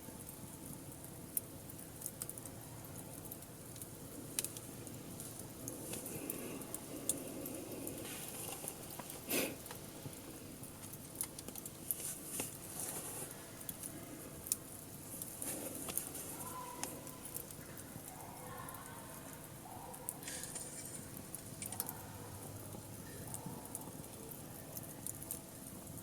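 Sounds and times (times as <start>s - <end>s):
campfire crackling and popping: 0.0s - 26.0s
fire hissing: 0.4s - 18.0s, 20.1s - 23.0s.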